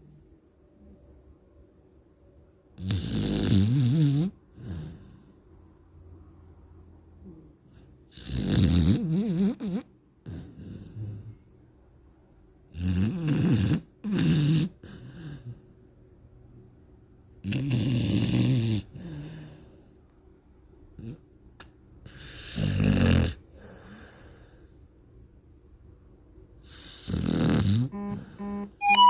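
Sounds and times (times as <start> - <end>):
dog snoring: 2.8 - 15.8, 17.4 - 20.0, 21.0 - 21.2, 22.0 - 24.8, 26.6 - 28.8
dog breathing softly: 4.5 - 8.1, 10.3 - 12.7, 23.4 - 25.1.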